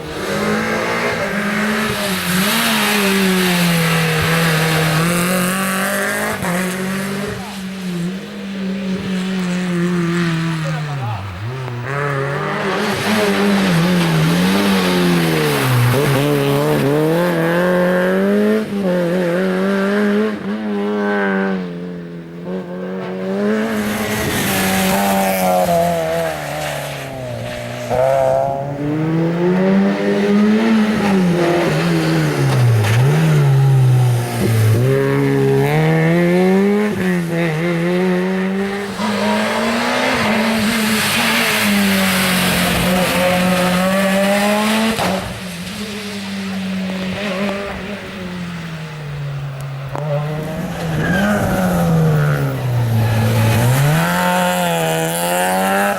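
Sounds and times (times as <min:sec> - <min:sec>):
rally car engines revving: 0:00.0 - 0:55.9
tyre squeal: 0:50.8 - 0:54.4.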